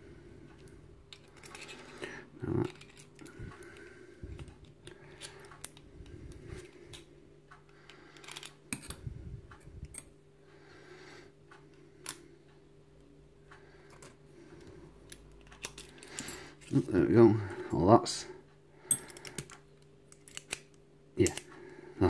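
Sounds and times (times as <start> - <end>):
faint steady hum: 0.0 - 22.0
small metal clicks and scrapes: 1.1 - 2.0, 2.6 - 3.8.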